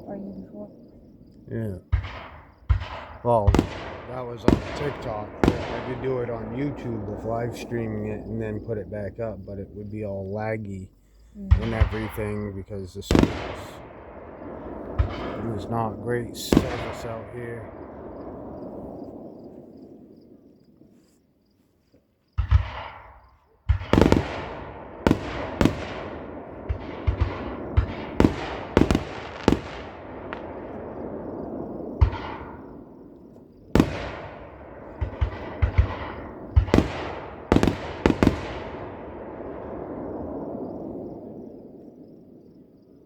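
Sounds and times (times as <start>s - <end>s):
fireworks bangs with rumbling echo: 0.8s - 20.4s, 22.4s - 42.9s.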